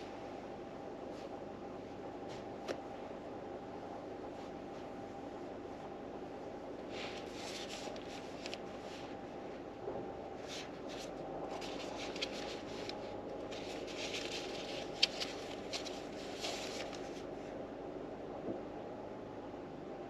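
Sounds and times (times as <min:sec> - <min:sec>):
book pages rustling: 0:06.9 - 0:09.1, 0:10.4 - 0:17.3.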